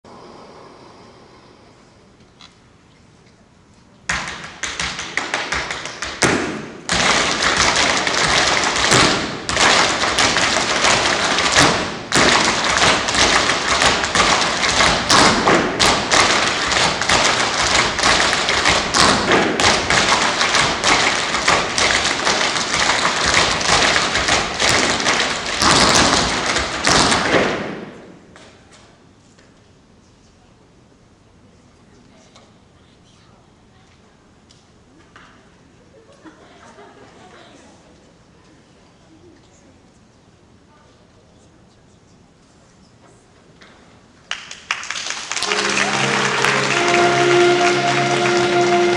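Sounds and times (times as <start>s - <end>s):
tap shoes tapping on hard floor: 4.1s - 27.4s.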